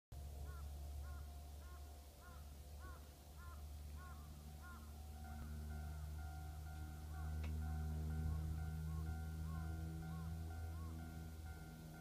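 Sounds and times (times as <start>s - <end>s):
steady high-toned hum: 0.2s - 12.0s
level crossing warning bell ringing: 3.6s - 12.0s.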